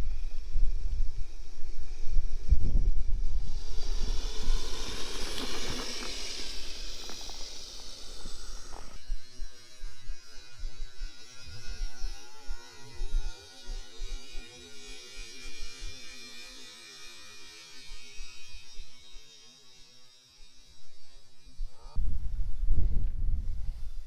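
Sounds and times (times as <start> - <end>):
toy snow vehicle motor whining: 0.0 - 21.4.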